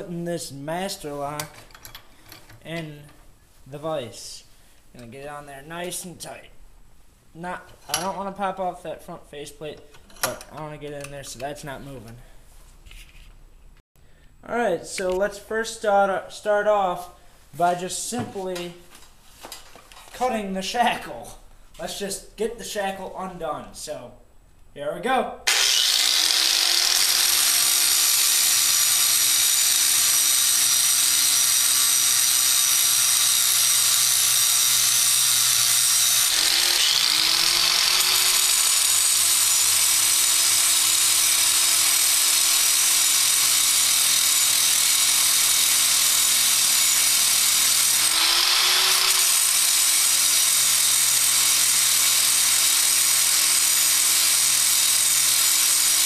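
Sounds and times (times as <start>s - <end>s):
angle grinder cutting metal: 25.5s - 56.0s.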